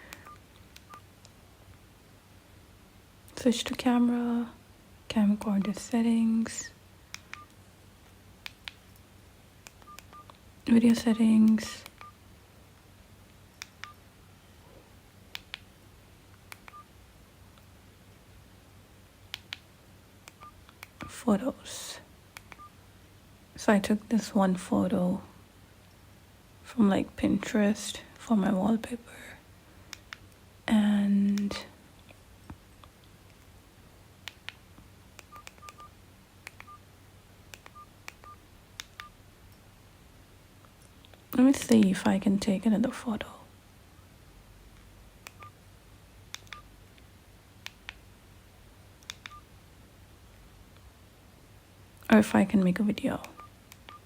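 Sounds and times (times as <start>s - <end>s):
phone key beeps: 35.3s - 35.9s.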